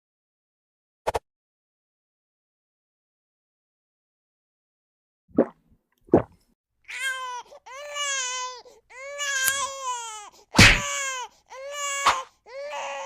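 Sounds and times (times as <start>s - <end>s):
wailing baby-like cry: 6.9s - 13.0s.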